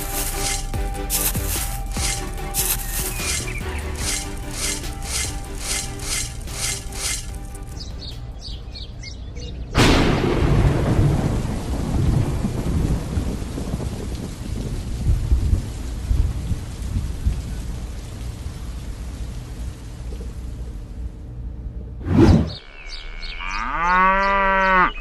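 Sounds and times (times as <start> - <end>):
music with steady beat: 0.0 - 7.7
thunder crack and rumble: 9.8 - 18.0.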